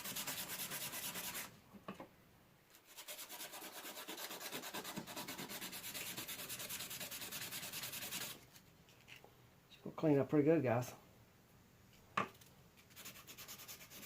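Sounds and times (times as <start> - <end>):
sandpaper rubbing on knife blade: 0.0 - 1.5, 2.8 - 8.4, 12.8 - 14.0.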